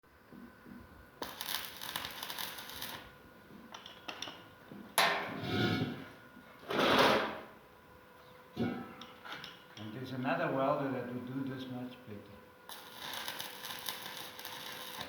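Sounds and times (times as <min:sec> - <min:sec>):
welding arc crackling: 0:01.2 - 0:03.1, 0:12.7 - 0:15.0.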